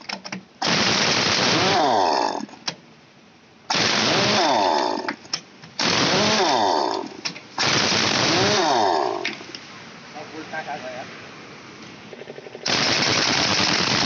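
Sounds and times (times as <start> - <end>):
pneumatic impact wrench hammering: 3.7 - 8.6.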